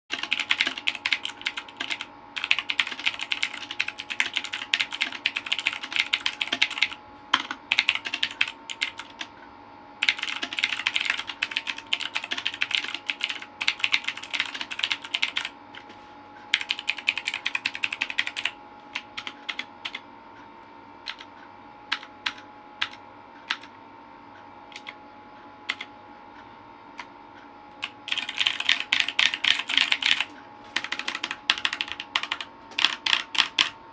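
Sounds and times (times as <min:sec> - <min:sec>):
mechanical keyboard typing: 0:00.1 - 0:09.3, 0:10.0 - 0:15.5, 0:16.5 - 0:20.0, 0:21.0 - 0:21.3, 0:21.9 - 0:23.7, 0:24.7 - 0:25.0, 0:25.7 - 0:25.9, 0:27.8 - 0:33.8.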